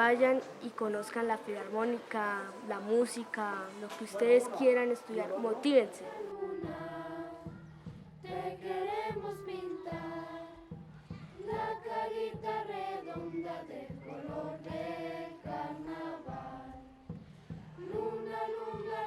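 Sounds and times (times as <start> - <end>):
children's choir singing: 0.0 - 19.0.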